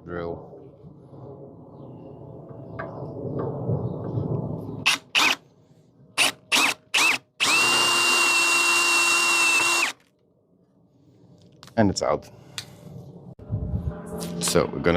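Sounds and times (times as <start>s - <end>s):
low rumble: 0.4s - 4.8s, 12.7s - 14.9s
power drill whining: 6.2s - 10.1s.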